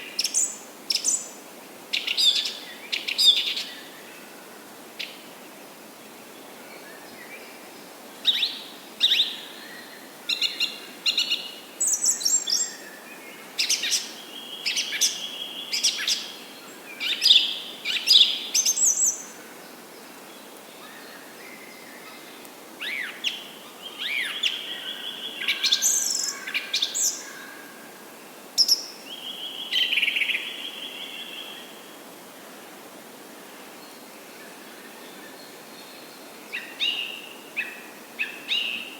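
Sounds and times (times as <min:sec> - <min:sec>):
background hiss: 0:00.0 - 0:38.9
wild birds chirping: 0:08.2 - 0:32.0.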